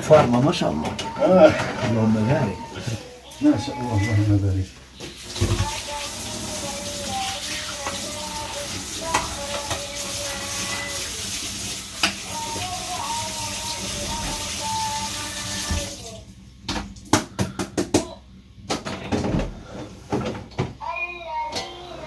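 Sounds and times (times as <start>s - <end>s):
kitchen items knocking and clattering: 0.0s - 2.9s, 5.1s - 5.8s, 16.6s - 20.8s
water running from a tap: 0.0s - 17.2s.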